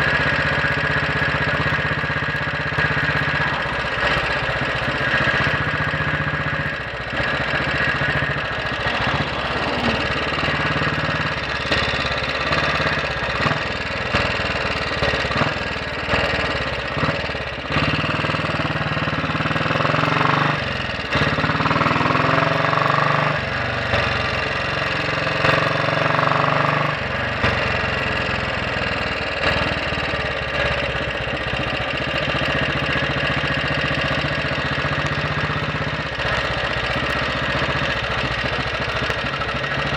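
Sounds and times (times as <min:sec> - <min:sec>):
motorcycle engine thumping: 0:00.0 - 0:39.9.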